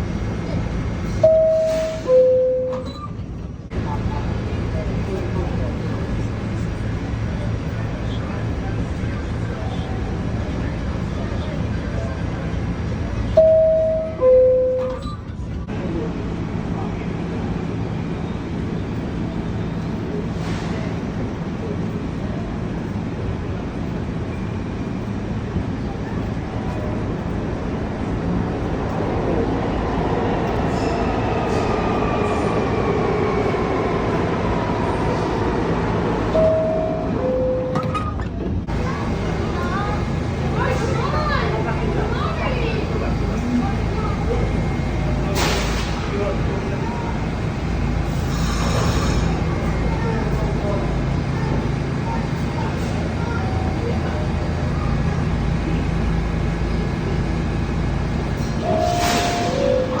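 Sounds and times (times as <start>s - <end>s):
subway wheels rumbling on rail: 0.0s - 60.0s
subway door chime: 1.1s - 3.4s, 13.2s - 15.6s, 30.1s - 60.0s
two-tone door chime: 1.2s - 3.1s, 13.4s - 15.2s, 36.3s - 38.2s.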